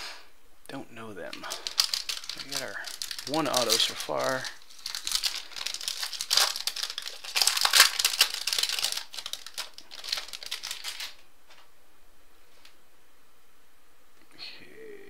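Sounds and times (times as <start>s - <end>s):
plastic and foil crinkling: 1.3s - 11.6s.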